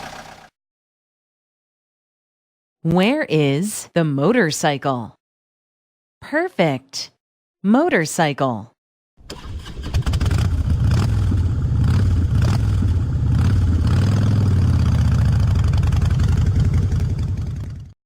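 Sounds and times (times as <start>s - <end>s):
motorcycle engine running: 10.1s - 18.0s.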